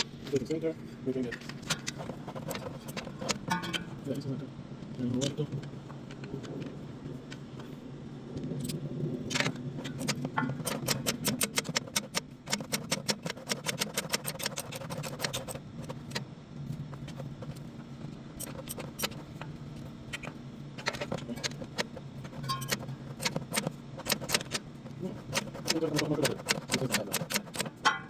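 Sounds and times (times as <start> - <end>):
steady low hum: 0.0 - 28.0
metal tools clicking: 18.4 - 19.3, 20.1 - 24.6, 25.2 - 28.0
metal tools clinking: 22.3 - 22.9.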